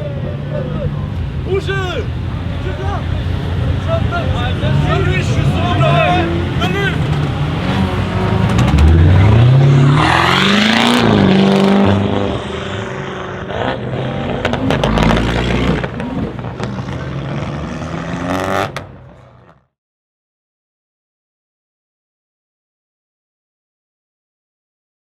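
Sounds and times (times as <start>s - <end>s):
car engine accelerating hard: 2.1s - 19.6s.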